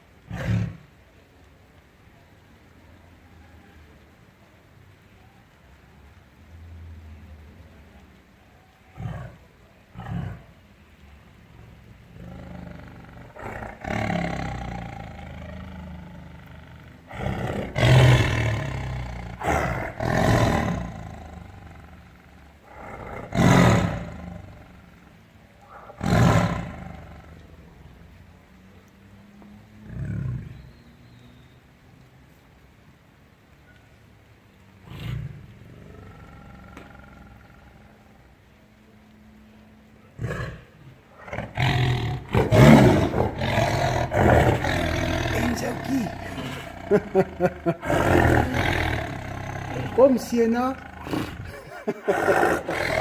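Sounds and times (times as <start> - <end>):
tiger roaring: 0.3 - 1.0, 8.9 - 10.6, 11.5 - 27.9, 29.8 - 30.6, 34.8 - 38.4, 40.1 - 53.0.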